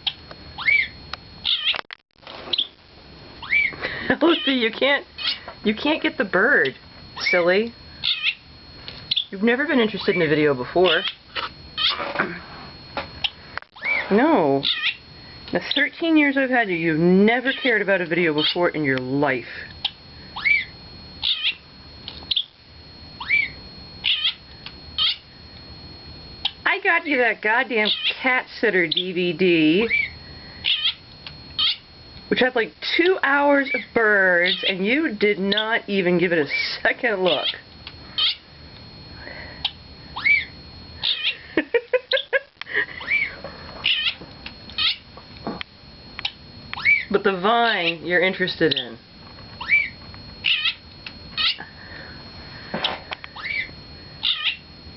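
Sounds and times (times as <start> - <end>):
cat chirping meows: 0.0 - 1.8, 3.4 - 3.7, 5.2 - 5.4, 8.0 - 8.4, 10.9 - 11.2, 11.8 - 12.0, 14.6 - 15.0, 19.8 - 21.6, 22.3 - 22.5, 23.2 - 24.4, 25.0 - 25.2, 29.9 - 31.0, 31.6 - 31.8, 34.5 - 34.8, 38.2 - 38.4, 39.6 - 41.4, 43.0 - 44.2, 44.8 - 45.0, 46.2 - 47.1, 49.6 - 50.8, 51.4 - 51.6, 53.4 - 54.6.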